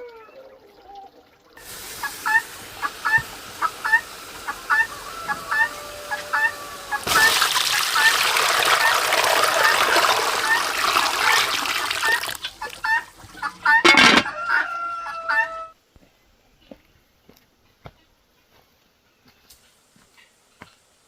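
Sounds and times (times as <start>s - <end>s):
chickens clucking: 1.9s - 15.8s
rooster crowing: 4.6s - 7.1s, 13.4s - 15.8s.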